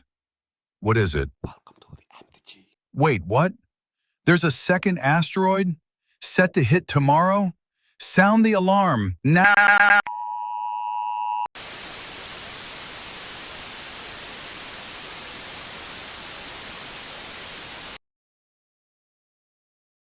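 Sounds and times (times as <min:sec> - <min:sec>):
two-tone attention signal: 0:09.4 - 0:11.5
white-noise static hiss: 0:11.6 - 0:18.0.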